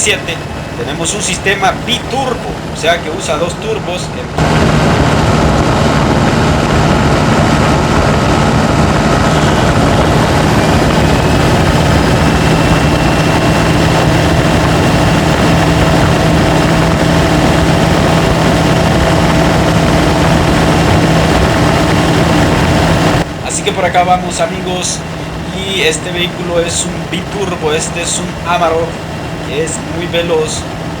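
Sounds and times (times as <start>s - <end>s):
diesel engine droning under load: 0.0s - 31.0s.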